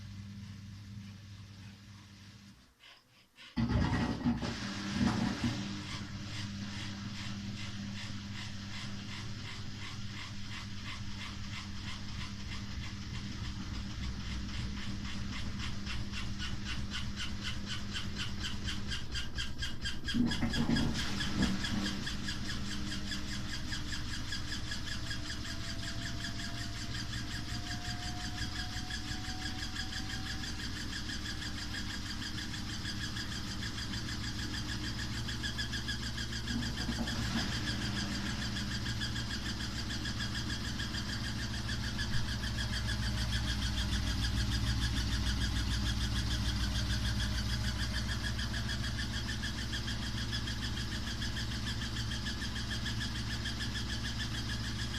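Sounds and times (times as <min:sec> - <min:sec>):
washing machine running: 0:00.0 - 0:54.9
fast fine rattle: 0:02.8 - 0:54.9
faint rising whine: 0:20.8 - 0:52.4.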